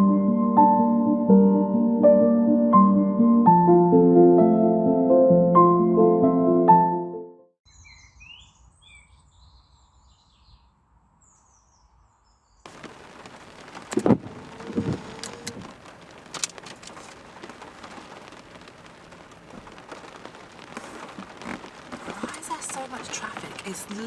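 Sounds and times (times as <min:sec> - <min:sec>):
faint birdsong chirps: 0:07.6 - 0:12.7
rain hiss: 0:12.7 - 0:24.0.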